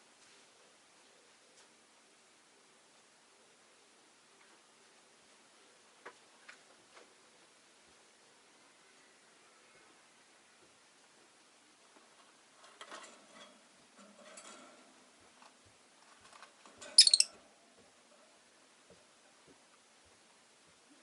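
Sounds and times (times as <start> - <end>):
lovebird high-pitched chirp: 16.9 - 17.3
lovebird soft calls: 17.0 - 17.3.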